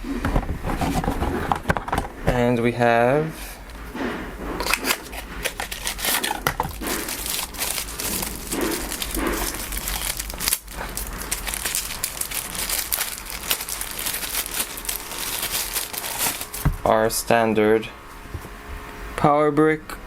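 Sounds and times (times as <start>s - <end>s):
packaging crinkling: 4.6s - 17.0s.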